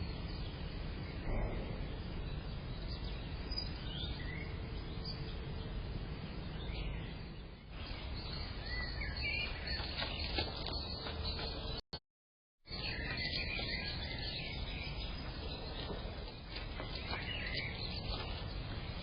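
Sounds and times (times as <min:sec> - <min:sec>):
steady low noise: 0:00.0 - 0:09.8.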